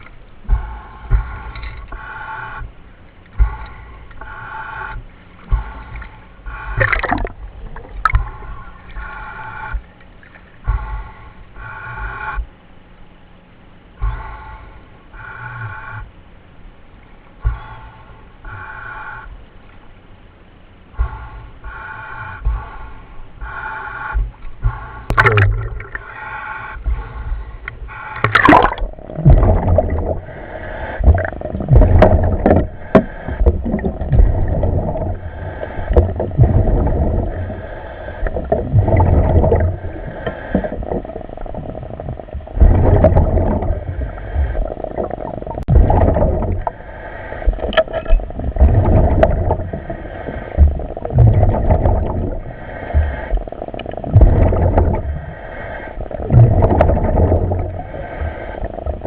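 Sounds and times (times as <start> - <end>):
diver breathing in helmet: 0.0 - 10.0, 10.6 - 12.6, 14.0 - 16.2, 17.4 - 19.5, 20.9 - 59.0
gurgling bubbles: 6.5 - 8.3, 25.1 - 26.1, 28.1 - 59.0.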